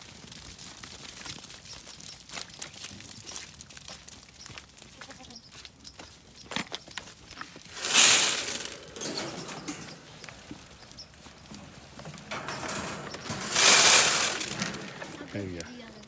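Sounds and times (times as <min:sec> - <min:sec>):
rustling and small knocks: 0:05.7 - 0:16.0.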